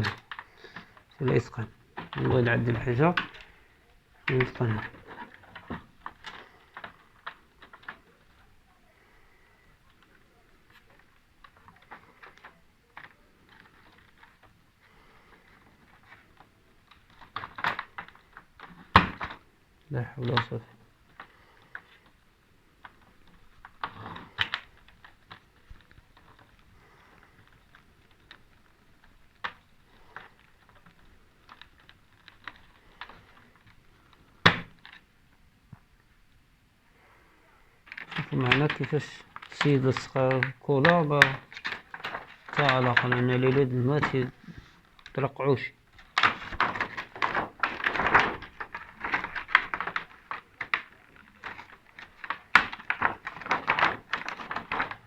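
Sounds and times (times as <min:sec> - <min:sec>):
plastic strips peeled off clicking: 0:00.0 - 0:36.0, 0:37.8 - 0:55.0.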